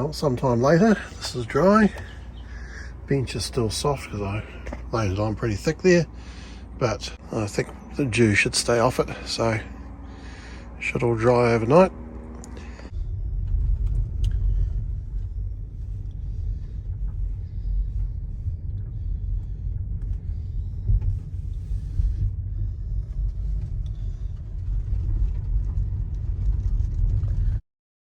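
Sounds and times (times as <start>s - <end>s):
wind buffeting microphone: 12.9s - 27.6s.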